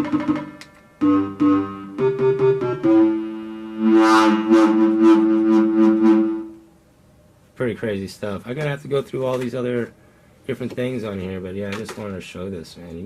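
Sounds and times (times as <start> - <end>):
pulsing two-note synth tone: 0.0 - 6.5
synthesizer notes: 0.0 - 6.6.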